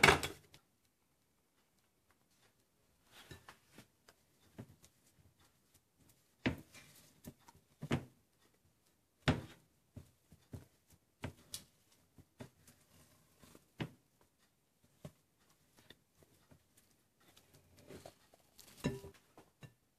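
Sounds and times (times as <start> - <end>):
objects knocking and clicking: 0.0 - 0.6.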